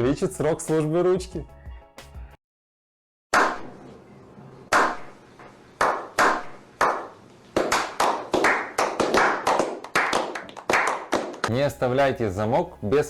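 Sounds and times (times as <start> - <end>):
percussive clap-like hits: 4.7 - 5.2, 5.8 - 11.6.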